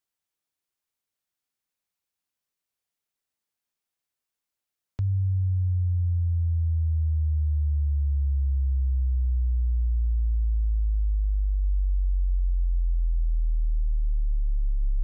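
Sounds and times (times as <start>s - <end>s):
low sine-wave test tone: 5.0s - 15.0s.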